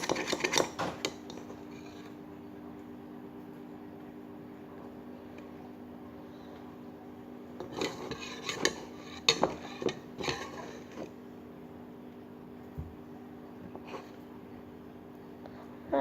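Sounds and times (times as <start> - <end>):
spoon stirring slime in bowl: 0.0 - 2.2, 7.5 - 11.2.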